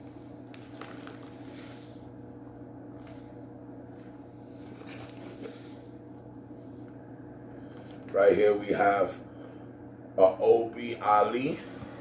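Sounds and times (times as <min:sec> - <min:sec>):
plastic bags crinkling: 0:00.0 - 0:02.0
low electrical hum: 0:00.0 - 0:12.0.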